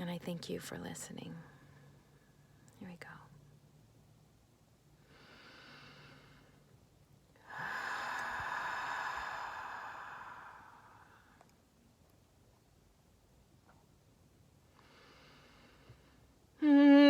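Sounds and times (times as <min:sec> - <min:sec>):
breathy sighing exhales: 0:07.4 - 0:11.5.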